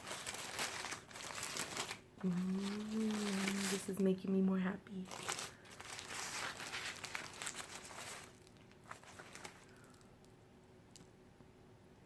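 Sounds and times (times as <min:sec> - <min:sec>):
food packaging crinkling: 0:00.0 - 0:04.1, 0:05.0 - 0:10.2.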